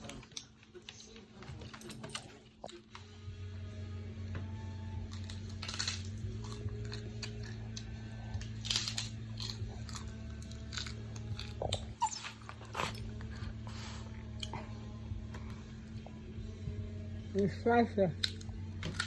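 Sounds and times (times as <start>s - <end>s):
steady low hum: 2.6s - 19.0s
pet crunching dry kibble: 5.0s - 14.1s, 18.2s - 19.0s.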